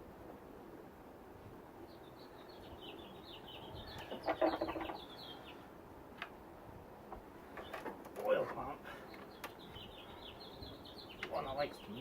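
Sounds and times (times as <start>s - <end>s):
bird chirping: 1.9s - 5.7s, 7.5s - 12.0s.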